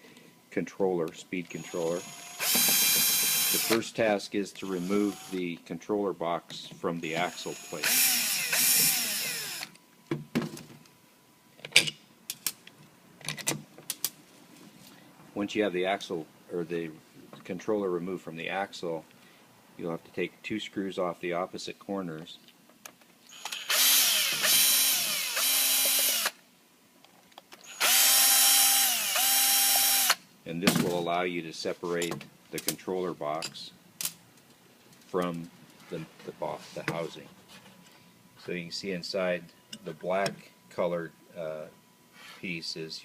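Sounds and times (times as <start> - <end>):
power drill winding down: 1.6 - 3.8, 4.8 - 5.4, 7.3 - 9.7, 23.3 - 26.4, 27.6 - 30.2.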